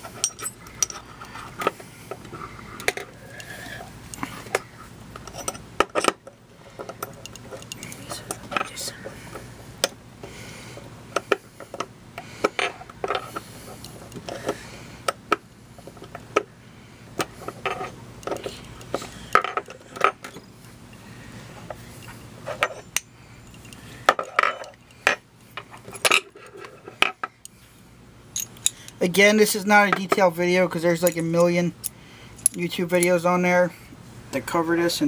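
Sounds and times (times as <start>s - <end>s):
metallic clicks of rifle parts: 31.0s - 33.2s.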